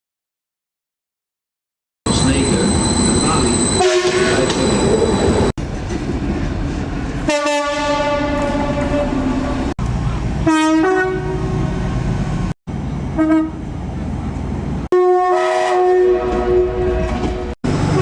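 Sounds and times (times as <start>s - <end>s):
train rumbling and clattering on track: 2.1s - 10.5s, 11.1s - 14.9s, 16.2s - 18.0s
train horn blasts: 3.8s - 4.4s, 7.3s - 9.5s, 10.4s - 11.6s, 13.2s - 13.6s, 14.9s - 18.0s.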